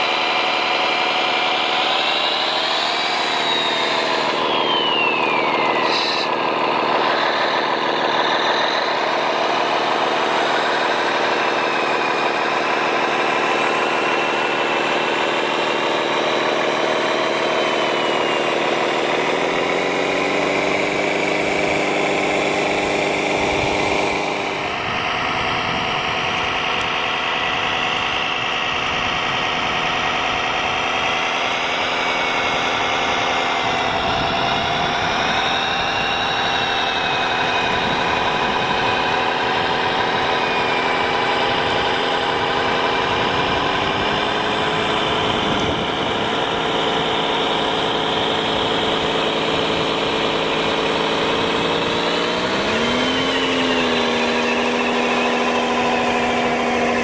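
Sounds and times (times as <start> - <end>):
model vehicle motor humming: 0.0 - 57.0
motor and gear whine: 0.0 - 57.0.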